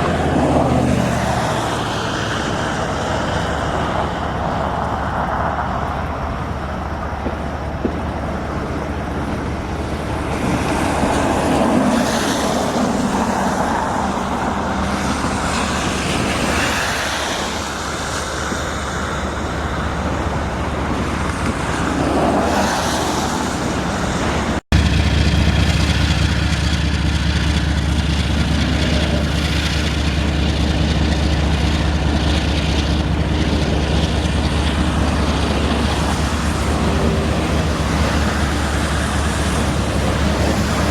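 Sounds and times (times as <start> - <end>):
low engine drone: 0.0 - 40.9
vehicles passing: 0.0 - 40.9.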